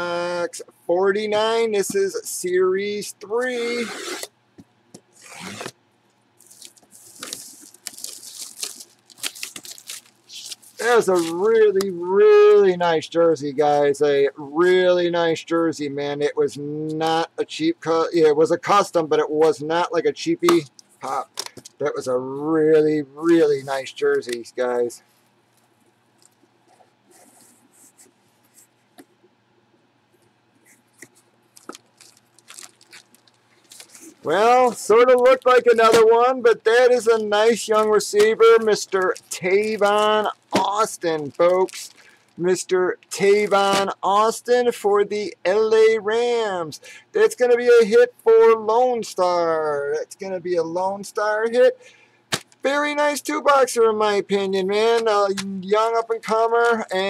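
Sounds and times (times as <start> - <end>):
packaging torn and crinkled: 6.4 - 11.4, 31.1 - 36.0, 37.6 - 42.4.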